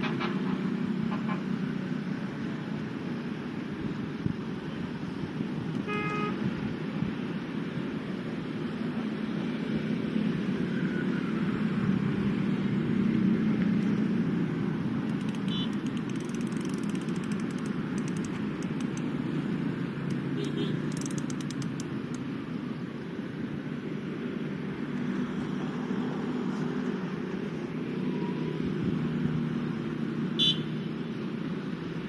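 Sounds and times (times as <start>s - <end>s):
road traffic: 0.0s - 32.0s.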